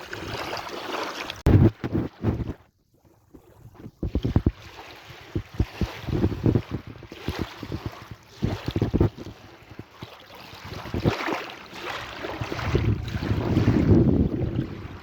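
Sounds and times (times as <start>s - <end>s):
wind buffeting microphone: 3.4s - 11.3s, 12.0s - 15.0s
sea waves washing in: 4.1s - 15.0s.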